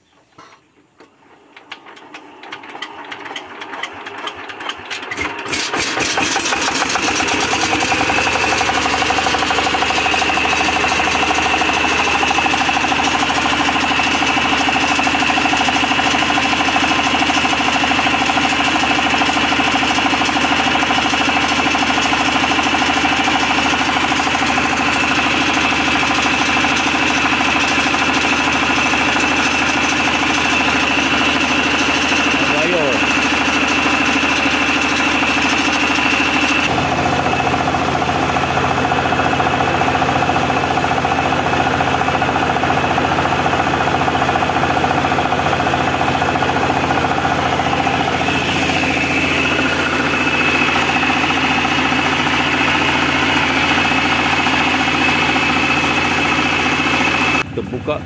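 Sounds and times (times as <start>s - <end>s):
pump engine starting and running: 1.0s - 58.0s.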